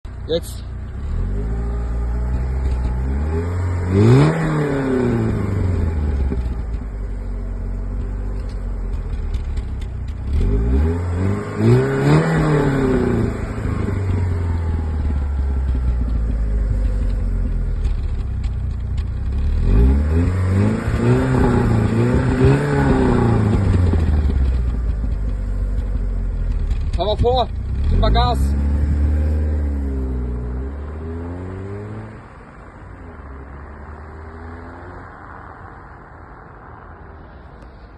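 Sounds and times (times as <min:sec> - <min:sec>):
car engine idling and revving: 0:00.0 - 0:37.9.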